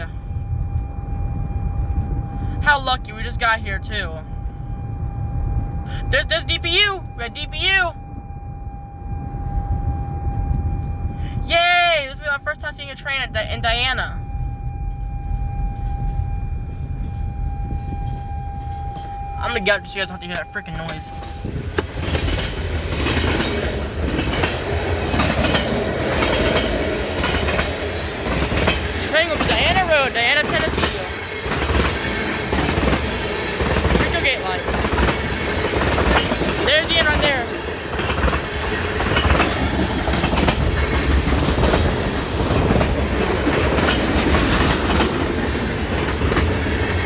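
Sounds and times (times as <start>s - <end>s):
train wheels rumbling on rail: 20.3s - 47.0s
wheels clicking over rail joints: 21.7s - 47.0s.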